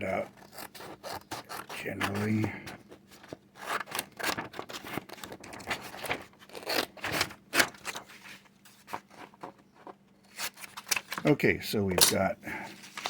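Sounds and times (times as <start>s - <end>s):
scissors cutting laminated paper: 0.0s - 8.0s.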